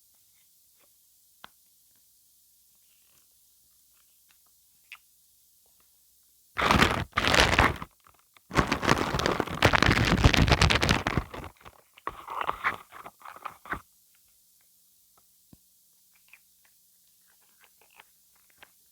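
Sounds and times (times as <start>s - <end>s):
glue film crackling when peeled: 6.6s - 7.9s, 8.5s - 11.7s.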